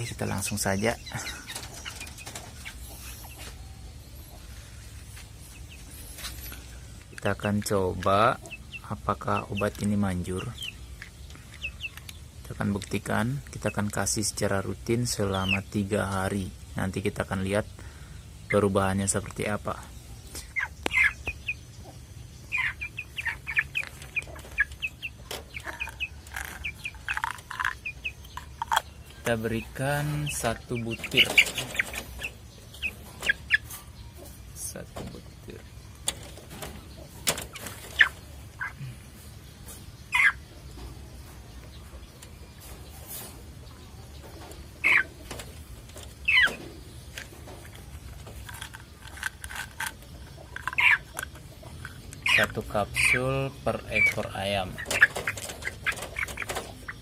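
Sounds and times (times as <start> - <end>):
chickens clucking: 0.0 - 57.0
chicken squawking: 20.4 - 21.2, 22.5 - 28.7, 37.5 - 38.8, 40.1 - 40.4, 44.8 - 45.3, 46.2 - 46.6, 50.4 - 51.2, 52.2 - 57.0
handling rustles and clicks: 47.1 - 52.3.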